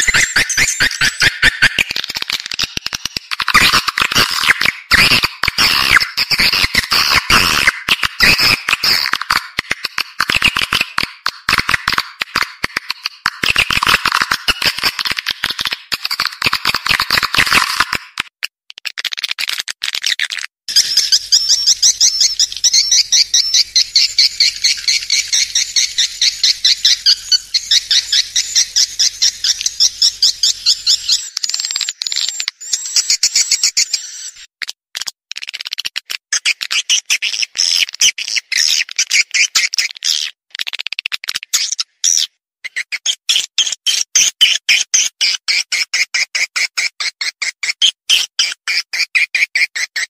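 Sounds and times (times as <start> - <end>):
high-pitched bird chirping: 0.0 - 2.0, 3.4 - 11.0, 20.7 - 34.5.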